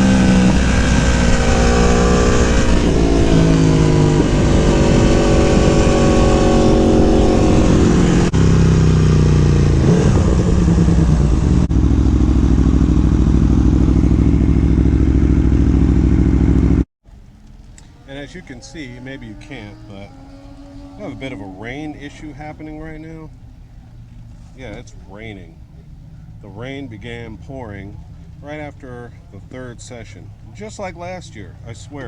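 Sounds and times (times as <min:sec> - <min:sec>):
wind rush: 0:00.0 - 0:16.8
motorcycle engine under load: 0:00.0 - 0:32.0.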